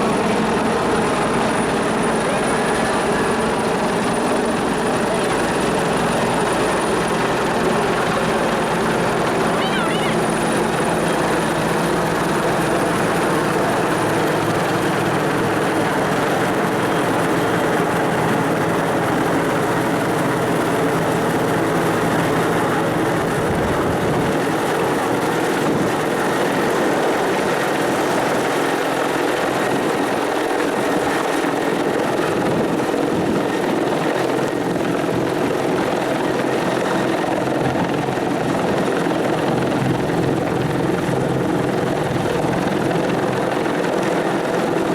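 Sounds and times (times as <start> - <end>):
helicopter turbines and rotor: 0.0 - 44.9.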